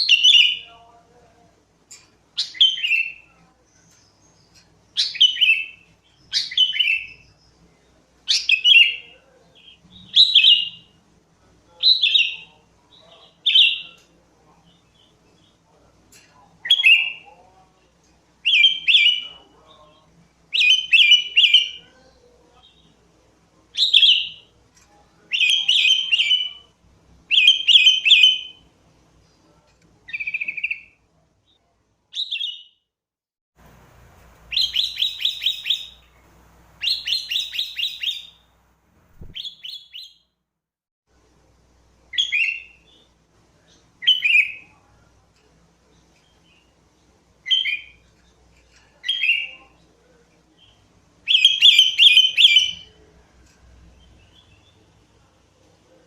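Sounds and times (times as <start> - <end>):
bulbul singing: 33.6 - 38.5, 39.2 - 40.2.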